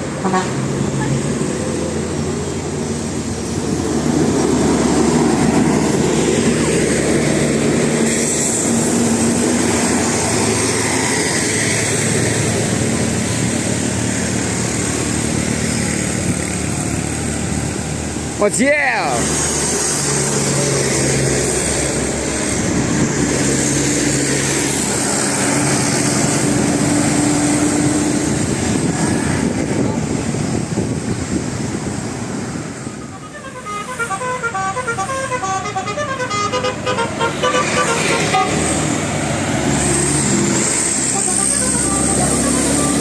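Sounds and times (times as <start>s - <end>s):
low vehicle drone: 0.0s - 35.0s
bus running: 0.0s - 43.0s
street noise: 0.0s - 43.0s
bus horn playing a tune: 0.2s - 0.8s, 33.0s - 38.8s, 41.0s - 43.0s.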